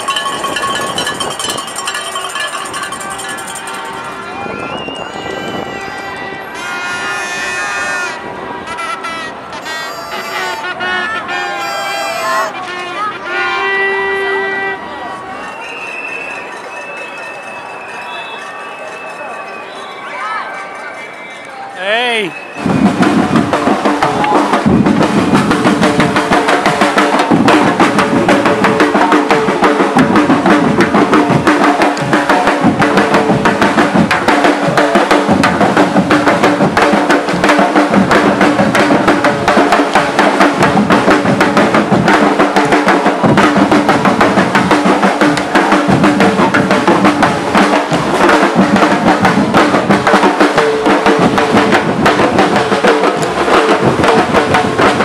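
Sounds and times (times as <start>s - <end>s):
drums and banging: 0.0s - 5.9s, 21.8s - 55.0s.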